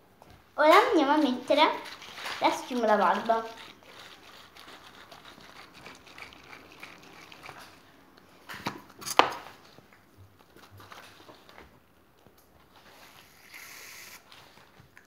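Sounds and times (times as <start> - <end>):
aerosol can spluttering hiss: 13.4 - 14.2.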